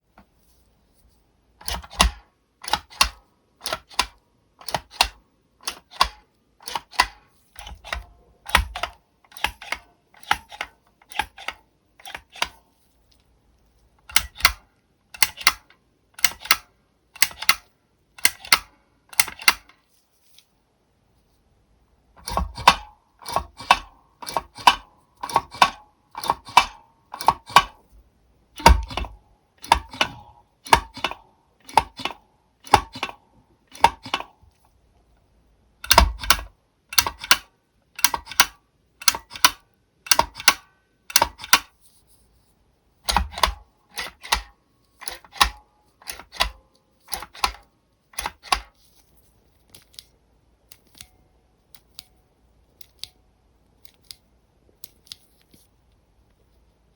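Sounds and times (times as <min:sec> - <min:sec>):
large keyboard switch clacking: 0:01.6 - 0:12.6, 0:14.1 - 0:14.6, 0:15.2 - 0:19.7, 0:22.2 - 0:27.8, 0:28.6 - 0:34.3, 0:35.8 - 0:41.7, 0:43.1 - 0:47.6, 0:48.2 - 0:48.7.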